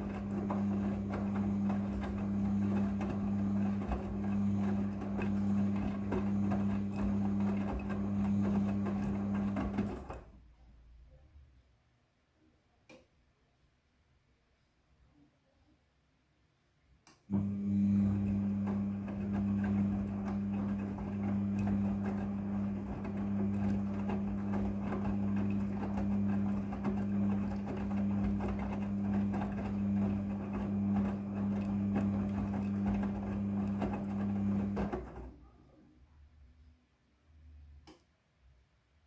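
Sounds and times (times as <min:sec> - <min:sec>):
washing machine running: 0:00.0 - 0:10.3, 0:17.3 - 0:35.5.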